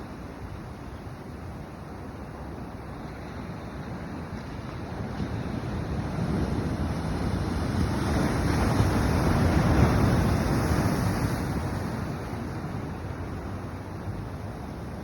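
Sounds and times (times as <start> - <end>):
wind buffeting microphone: 0.0 - 15.0
ocean wave rushing in: 2.9 - 15.0.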